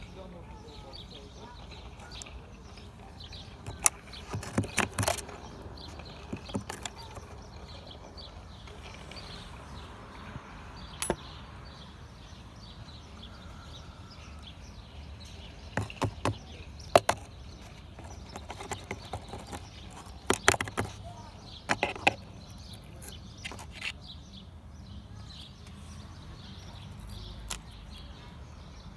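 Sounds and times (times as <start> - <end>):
faint steady background noise: 0.0 - 28.9
tools clicking and knocking: 1.7 - 7.7, 11.0 - 11.3, 15.8 - 21.0, 21.6 - 23.9.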